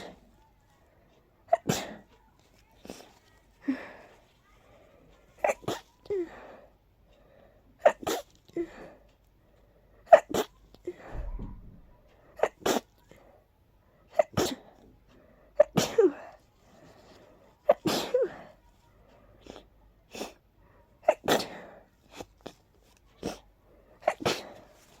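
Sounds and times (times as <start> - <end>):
person sneezing: 24.0 - 24.6.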